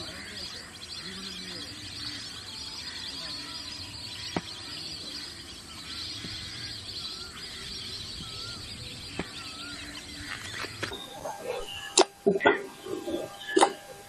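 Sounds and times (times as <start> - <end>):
birds chattering: 0.0 - 14.0
short wavering bird call: 8.2 - 14.0.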